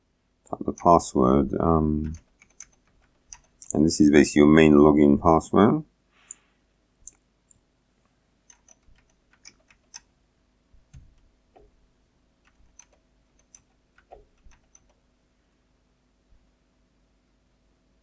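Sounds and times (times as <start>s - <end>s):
computer keyboard typing: 2.0s - 3.8s, 8.5s - 10.1s, 10.8s - 11.8s, 12.4s - 15.0s.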